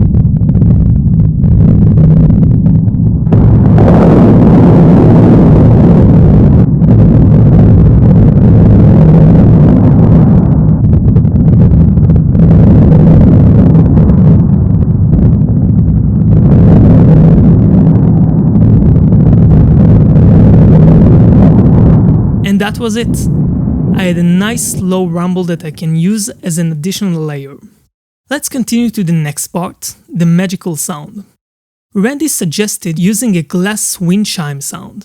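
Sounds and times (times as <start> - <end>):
low thunder-like rumble: 0.0 - 25.7.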